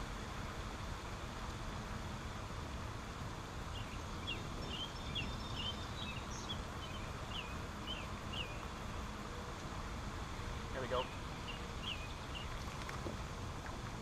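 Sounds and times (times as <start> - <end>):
songbird chirping: 3.7 - 8.8, 10.7 - 12.8.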